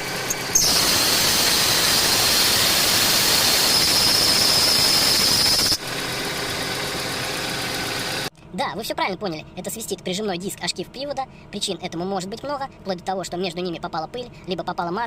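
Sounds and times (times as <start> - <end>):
compressor clutch squealing: 0.0 - 8.3
car engine idling: 5.9 - 8.3.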